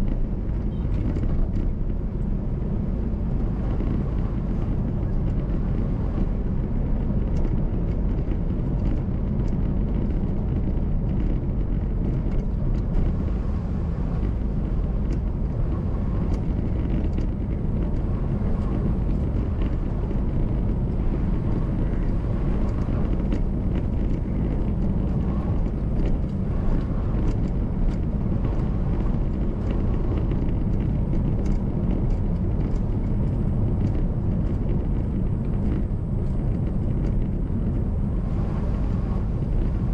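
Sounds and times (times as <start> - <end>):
car engine and tyre rumble: 0.0 - 39.9
faint ticks: 14.1 - 37.8.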